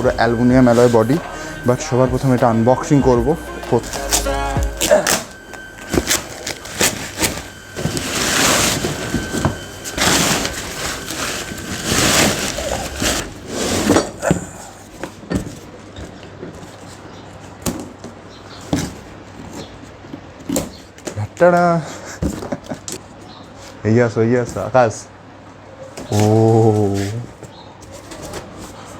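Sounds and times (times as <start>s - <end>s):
cardboard tearing and scraping: 6.0s - 14.1s.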